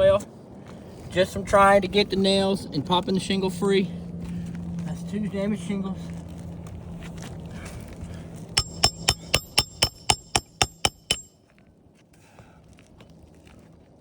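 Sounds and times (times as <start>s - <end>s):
hammer striking metal: 8.6s - 11.3s.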